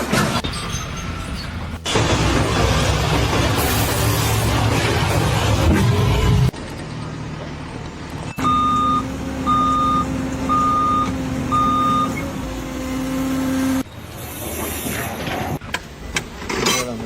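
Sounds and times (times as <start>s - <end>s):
engine hum: 0.0s - 15.6s
reversing alarm beeping: 8.3s - 12.3s.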